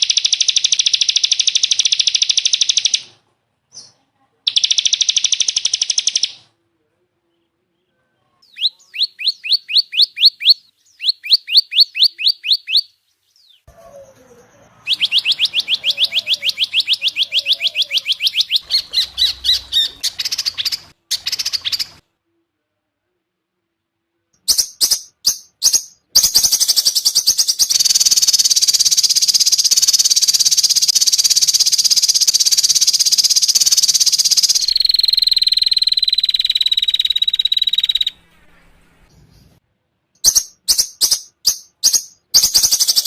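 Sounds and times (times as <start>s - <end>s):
songbird fast high trill: 14.8s - 22.0s, 24.5s - 38.3s, 40.2s - 43.0s
down-sweeping whistled bird notes: 26.5s - 39.6s.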